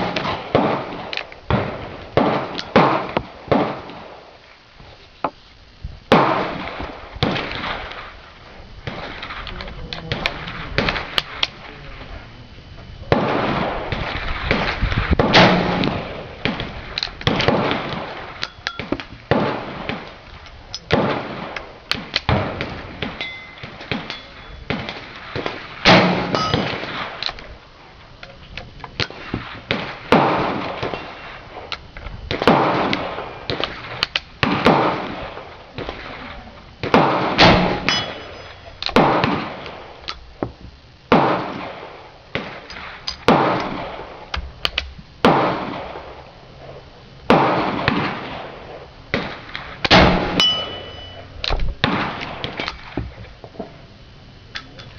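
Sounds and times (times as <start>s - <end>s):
gunshots with echo: 20.9s - 27.2s
short metallic ring: 23.2s - 24.6s, 26.3s - 26.7s, 37.8s - 38.8s, 50.4s - 51.3s.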